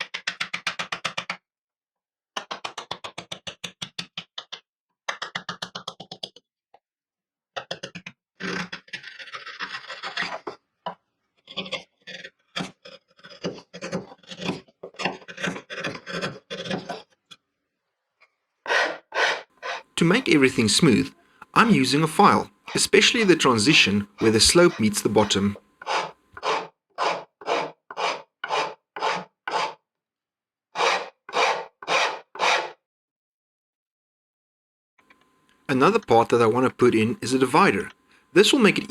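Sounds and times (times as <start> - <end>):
hand file rasping on wood: 11.5 - 17.0, 18.7 - 20.0, 22.7 - 29.8, 30.8 - 32.8.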